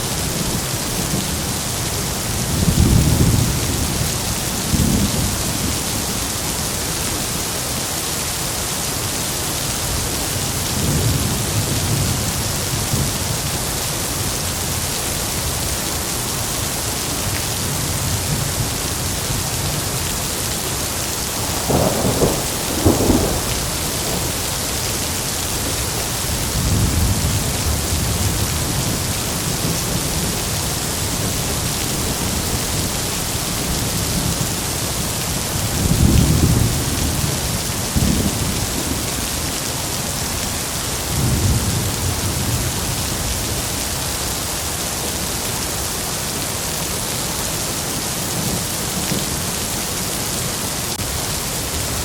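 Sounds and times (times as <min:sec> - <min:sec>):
heavy rain falling: 0:00.0 - 0:52.0
thunder rumbling: 0:21.3 - 0:34.4.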